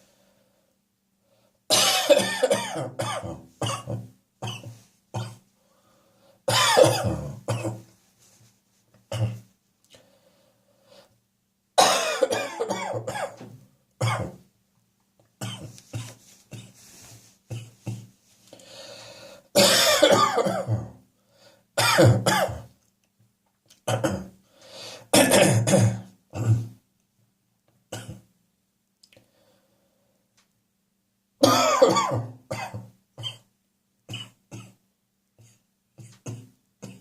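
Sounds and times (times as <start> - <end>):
person clearing throat: 1.7 - 5.4, 6.5 - 7.9, 9.1 - 9.5, 11.8 - 14.4, 15.4 - 16.8, 17.5 - 18.1, 19.6 - 21.0, 21.8 - 22.7, 23.9 - 24.4, 25.1 - 26.8, 27.9 - 28.3, 31.4 - 33.5, 34.1 - 34.8, 35.4 - 37.0
person coughing: 1.7 - 5.4, 6.5 - 7.9, 9.1 - 9.5, 11.8 - 14.4, 19.6 - 21.0, 21.8 - 22.7, 23.9 - 24.3, 25.1 - 26.8, 31.4 - 33.5, 35.4 - 37.0.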